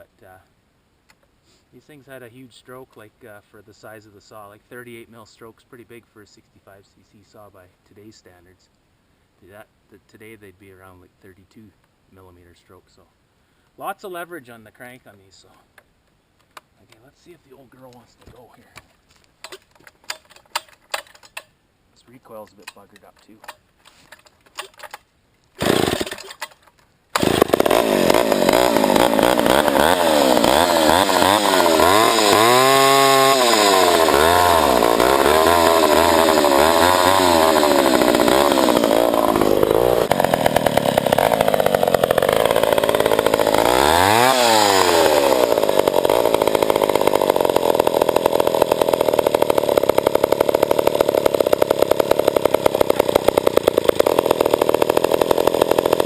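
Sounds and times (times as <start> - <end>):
recoil starter pull: 19.4 - 21.5, 22.6 - 56.0
chainsaw engine running: 25.6 - 26.6, 27.2 - 56.0.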